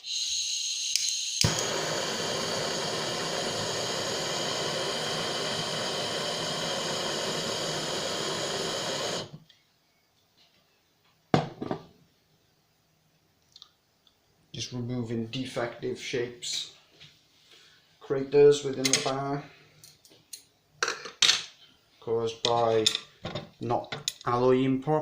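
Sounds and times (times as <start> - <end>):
blowtorch hissing: 0.0 - 9.4.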